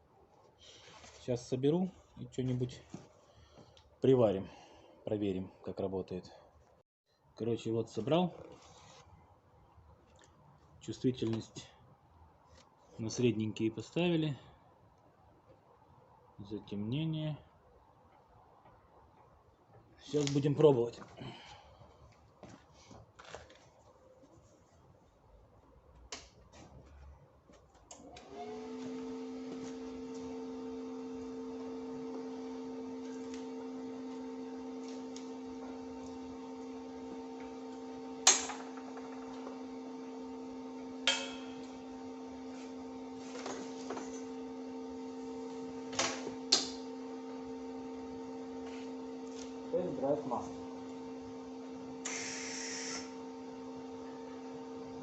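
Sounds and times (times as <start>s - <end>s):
welding machine humming: 28.5s - 55.0s.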